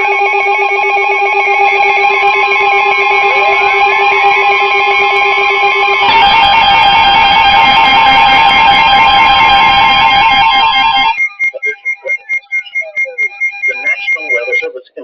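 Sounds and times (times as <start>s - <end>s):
steady electronic alert tone: 0.0s - 14.7s
short electronic beeps: 10.4s - 15.0s.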